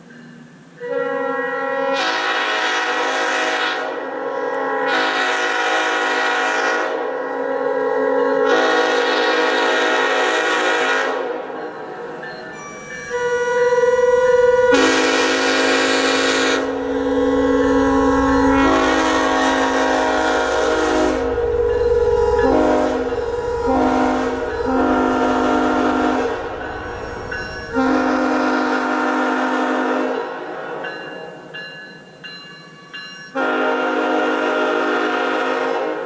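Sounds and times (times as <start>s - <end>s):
multi-chime air horn blasts: 12.4s - 30.2s.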